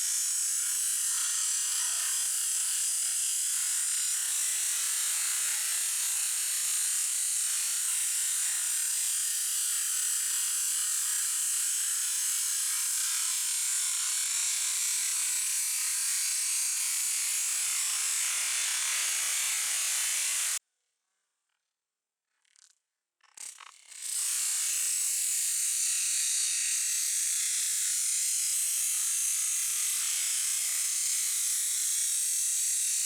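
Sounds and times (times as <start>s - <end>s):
pressure washer jet hissing: 18.0s - 20.6s.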